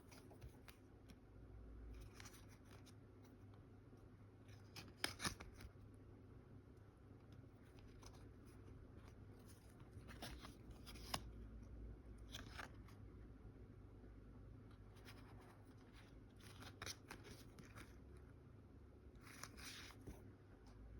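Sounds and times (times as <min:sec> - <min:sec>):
rustling of card pack: 0:01.9 - 0:03.4, 0:04.5 - 0:05.8, 0:07.3 - 0:11.4, 0:12.2 - 0:13.0, 0:14.8 - 0:18.2, 0:19.2 - 0:20.2.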